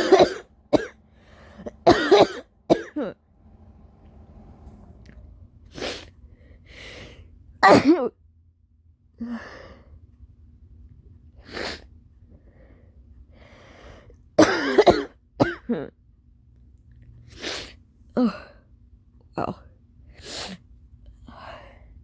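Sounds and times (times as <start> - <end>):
person coughing: 0.0 - 1.0, 1.6 - 3.2, 7.6 - 8.2, 14.4 - 15.9
quiet breaths: 1.0 - 1.8, 12.2 - 14.3, 20.0 - 22.0.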